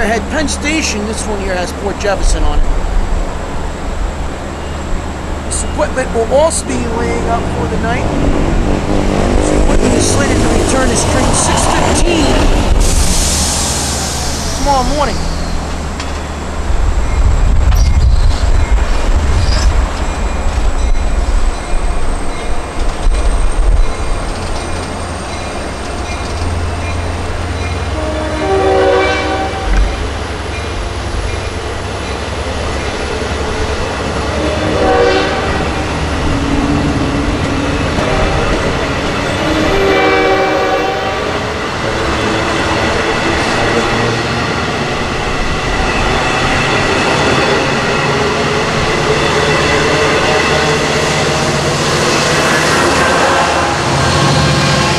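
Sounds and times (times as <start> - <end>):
diesel engine rumbling: 0.0 - 54.9
train horn: 27.9 - 29.8, 34.3 - 35.9, 38.0 - 38.6, 39.4 - 41.6, 52.2 - 54.9.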